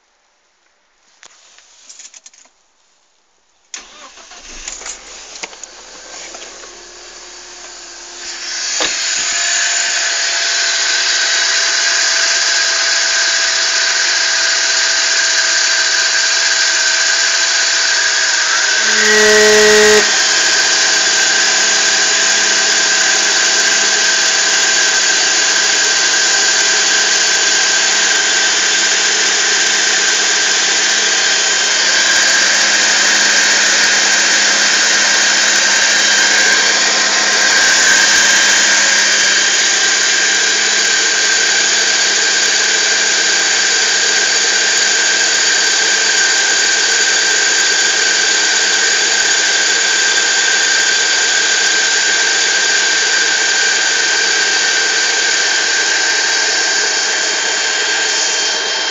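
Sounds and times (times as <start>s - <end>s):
car engine running: 3.8s - 43.8s, 53.3s - 58.9s
high-pitched whine: 16.6s - 41.5s.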